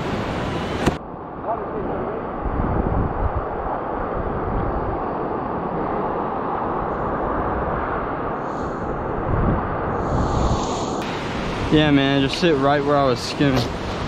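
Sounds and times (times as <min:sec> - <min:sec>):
wind buffeting microphone: 0:00.0 - 0:14.0
ocean surf: 0:03.3 - 0:14.0.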